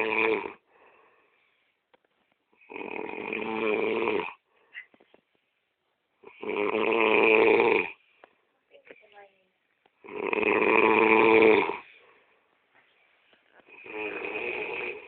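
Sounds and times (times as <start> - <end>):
man snoring loudly: 0.0 - 0.7, 2.6 - 4.4, 6.2 - 8.0, 10.0 - 12.0, 13.7 - 15.0.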